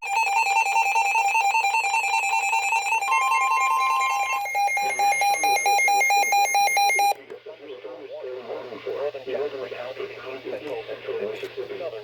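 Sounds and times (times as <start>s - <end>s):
rapid alarm beeping: 0.0s - 7.2s
steady high tone: 0.0s - 7.2s
warbling two-tone alarm trill: 0.0s - 7.2s.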